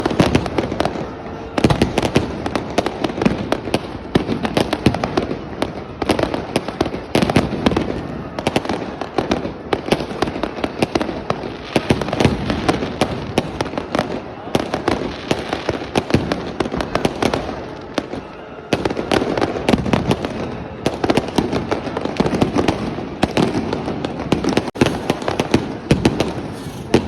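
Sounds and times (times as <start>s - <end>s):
firecrackers banging and crackling: 0.0s - 27.0s.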